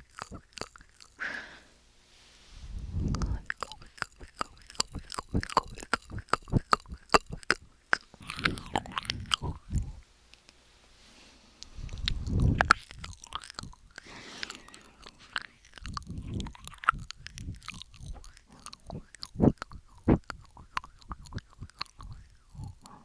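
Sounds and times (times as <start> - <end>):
wet mouth clicks and pops: 0.0 - 1.2, 3.0 - 10.6, 11.6 - 23.0.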